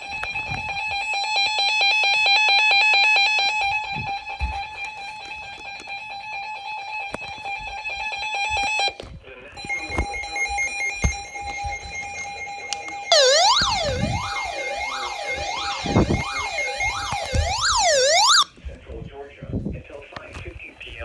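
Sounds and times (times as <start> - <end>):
rapid electronic alert beeping: 13.1 - 18.5
steady alert tone: 13.1 - 18.5.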